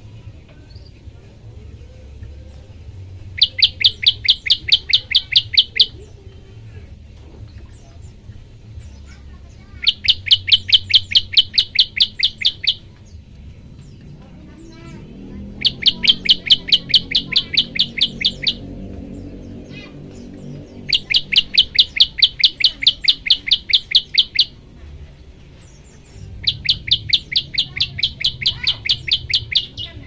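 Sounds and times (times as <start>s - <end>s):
faint bird chirps: 1.7s - 6.6s, 7.5s - 13.2s, 14.6s - 24.6s, 25.6s - 30.0s
bird singing rapid sharp notes: 3.2s - 6.3s, 7.5s - 30.0s.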